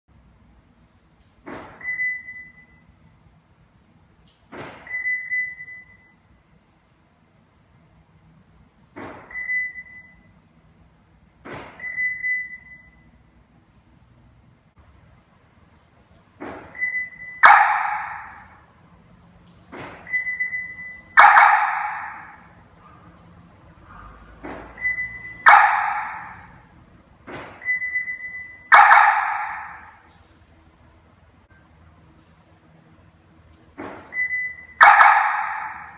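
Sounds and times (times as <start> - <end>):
car alarm beep: 1.8 - 3.0, 4.7 - 6.4, 9.2 - 10.4, 11.7 - 13.3, 16.5 - 18.6, 19.8 - 22.9, 24.5 - 26.7, 27.3 - 30.0, 34.0 - 35.9
car door locks clunking: 19.5 - 29.8.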